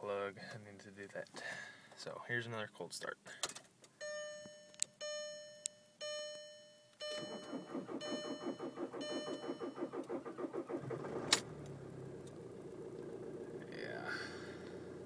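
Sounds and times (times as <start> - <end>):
diesel engine starting: 7.1 - 15.0
starter motor cranking: 7.2 - 13.7.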